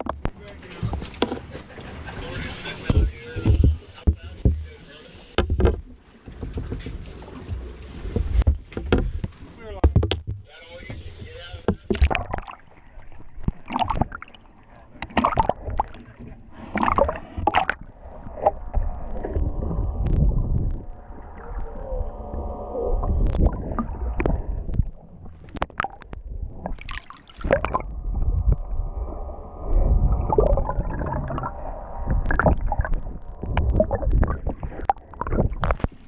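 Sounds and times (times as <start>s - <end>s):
water sloshing: 0.0s - 36.0s
low hum with pitched tones: 10.4s - 36.0s.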